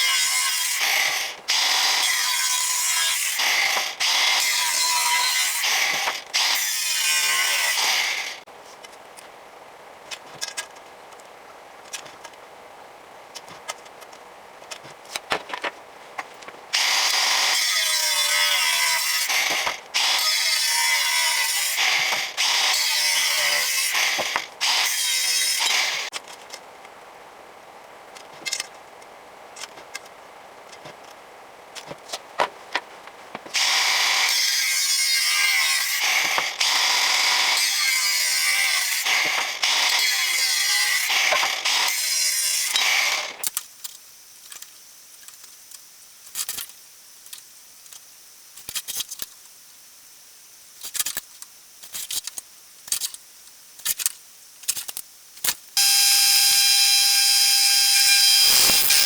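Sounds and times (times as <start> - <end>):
power tool motor running: 55.8 - 59.0.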